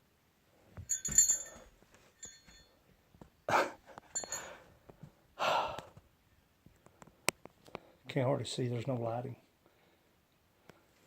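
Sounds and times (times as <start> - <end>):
heavy breaths: 0.6 - 2.7, 3.5 - 6.0
metallic clink: 0.8 - 2.8, 4.1 - 4.6
faint clicks and taps: 5.8 - 7.9.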